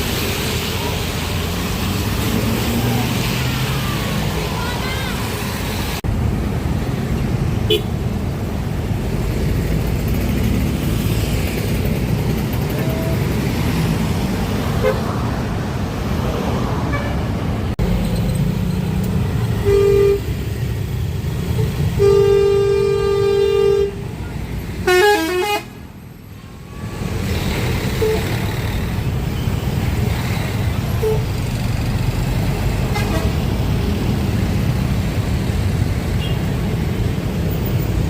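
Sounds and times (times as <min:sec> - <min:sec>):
traffic and engine noise: 0:00.0 - 0:38.0
multi-tone bus air horn: 0:07.7 - 0:07.9, 0:14.8 - 0:15.0, 0:19.6 - 0:20.4, 0:21.6 - 0:24.2, 0:24.8 - 0:25.8, 0:28.0 - 0:28.4, 0:31.0 - 0:31.3, 0:32.9 - 0:33.4.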